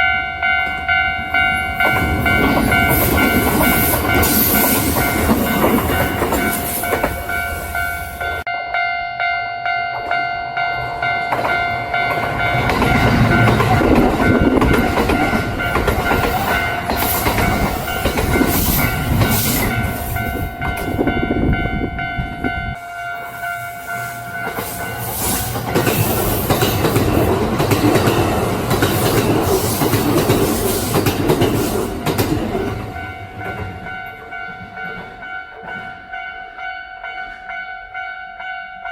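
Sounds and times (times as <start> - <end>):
steady high tone: 0.0 - 26.3
train wheels clattering over rail joints: 11.3 - 21.0, 24.4 - 36.1.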